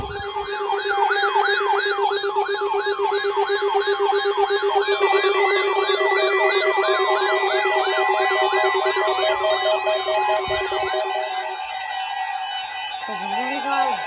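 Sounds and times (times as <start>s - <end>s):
pulsing tone: 0.0s - 1.4s, 4.5s - 14.0s
electronic siren yelping: 0.0s - 14.0s.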